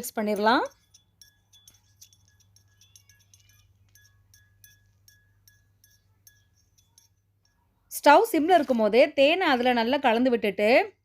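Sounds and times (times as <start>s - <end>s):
spoon clinking against pan: 0.0s - 7.7s.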